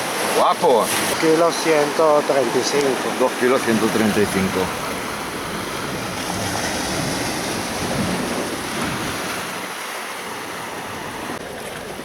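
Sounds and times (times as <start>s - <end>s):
surf washing on beach: 0.0s - 12.0s
wind buffeting microphone: 3.6s - 12.0s.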